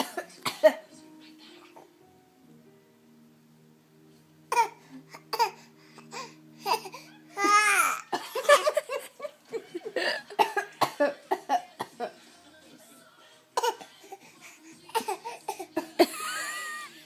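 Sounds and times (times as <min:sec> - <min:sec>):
baby coughing: 0:00.0 - 0:00.8, 0:04.5 - 0:05.6, 0:10.4 - 0:11.9, 0:13.6 - 0:14.0, 0:14.9 - 0:16.0
baby laughing: 0:06.7 - 0:10.4
adults fake coughing: 0:10.1 - 0:12.0.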